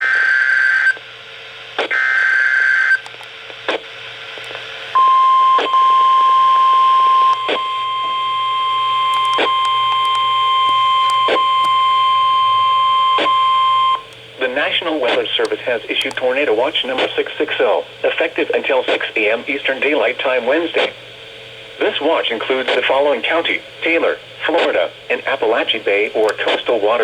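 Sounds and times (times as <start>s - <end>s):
steady warning alarm tone: 5.0s - 15.3s.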